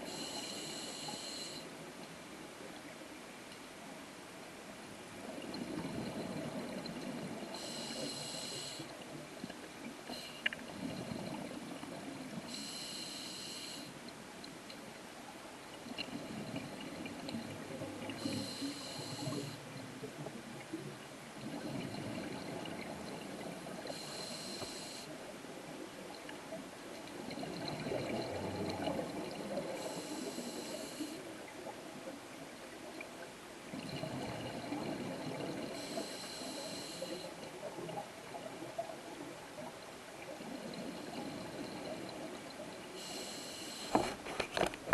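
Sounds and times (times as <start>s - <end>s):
hissing regulator inhales: 0.1s - 1.7s, 7.5s - 8.9s, 12.5s - 13.9s, 18.2s - 19.6s, 23.9s - 25.1s, 29.8s - 31.2s, 35.8s - 37.3s, 43.0s - 44.1s.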